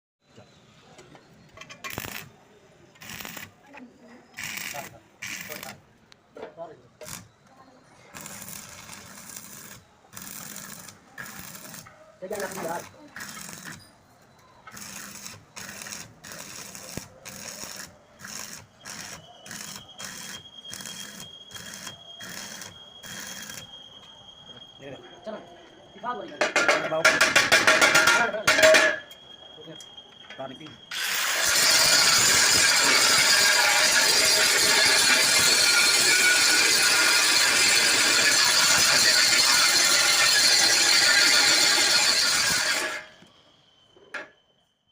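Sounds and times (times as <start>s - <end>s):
faint high whine: 0.2s - 27.1s, 27.8s - 36.8s, 37.5s - 44.9s
arc welding crackling hiss: 1.8s - 2.3s, 3.0s - 3.6s, 4.4s - 5.8s, 7.0s - 7.3s, 8.1s - 13.8s, 14.7s - 23.7s, 29.6s - 43.3s.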